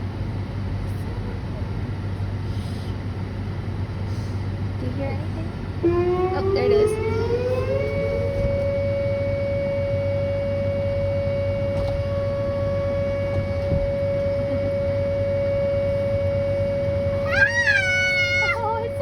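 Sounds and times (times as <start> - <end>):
warning siren wail: 5.8 - 19.0.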